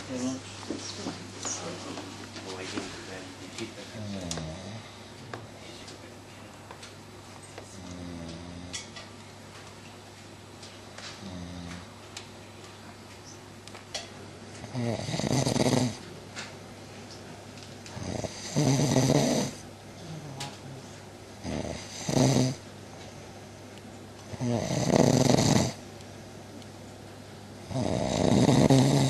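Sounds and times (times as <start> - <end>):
woman snoring: 14.6 - 16.0, 18.0 - 20.8, 21.4 - 22.6, 24.3 - 25.8, 27.7 - 29.0.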